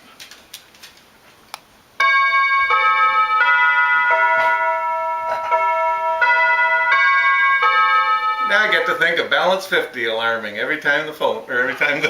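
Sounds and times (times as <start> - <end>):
doorbell chime tune: 2.0 - 9.2.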